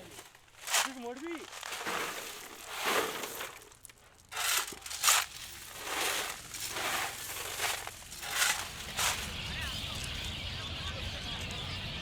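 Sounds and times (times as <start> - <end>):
shovel scraping gravel: 0.0 - 9.4.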